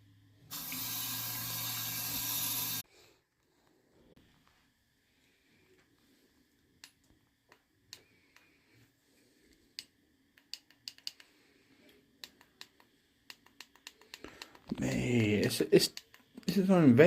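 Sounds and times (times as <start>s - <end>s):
small object clicking and tapping: 12.2s - 14.8s.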